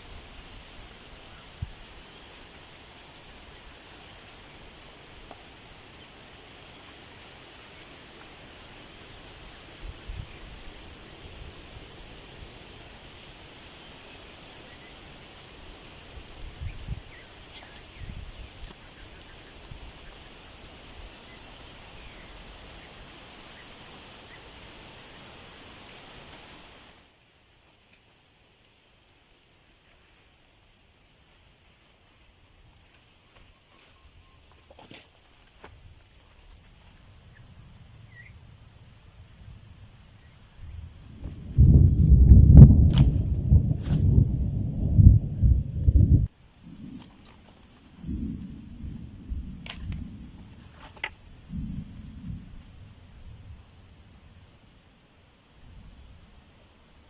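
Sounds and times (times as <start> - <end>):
rushing water: 0.0 - 27.2.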